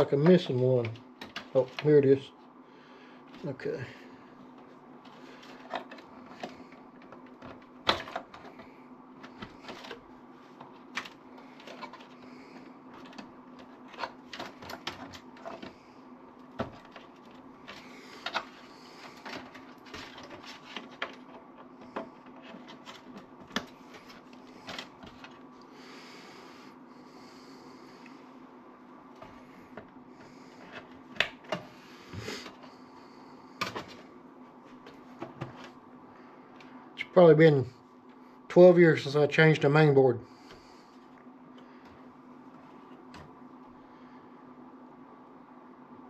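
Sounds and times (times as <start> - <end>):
steady low hum: 0.0 - 46.0
computer parts clicking and rattling: 5.1 - 10.0, 16.6 - 25.4.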